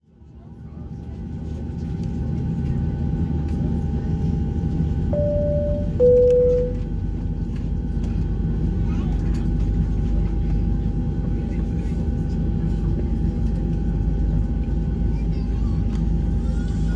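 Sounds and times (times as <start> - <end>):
airliner cabin rumble: 0.6 - 16.9
faint steady whine: 5.2 - 6.9
two-note cabin chime: 5.2 - 6.9.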